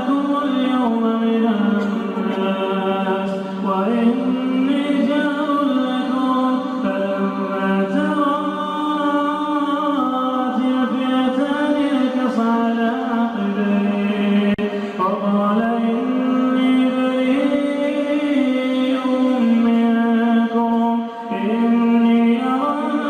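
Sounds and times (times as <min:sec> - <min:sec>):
man chanting melodically: 0:00.0 - 0:23.0.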